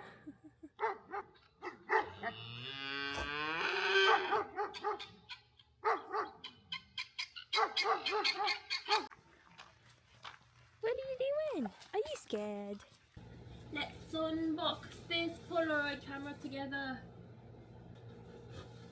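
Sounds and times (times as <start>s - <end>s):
dog barking: 0.8s - 2.3s, 4.0s - 5.2s, 5.8s - 6.5s, 7.5s - 9.1s
cow mooing: 2.0s - 4.4s.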